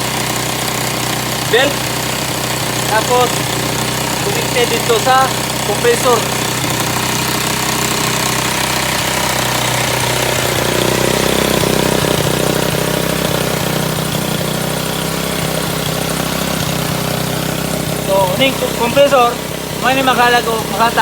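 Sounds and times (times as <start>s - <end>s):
compressor pump knocking: 0.0s - 21.0s
motorbike engine running: 0.0s - 21.0s.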